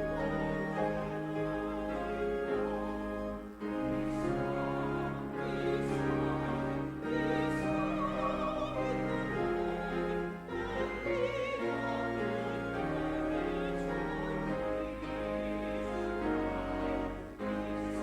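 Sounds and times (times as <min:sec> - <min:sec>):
person singing with vibrato: 0:00.0 - 0:16.8
instrumental accompaniment: 0:00.0 - 0:18.0.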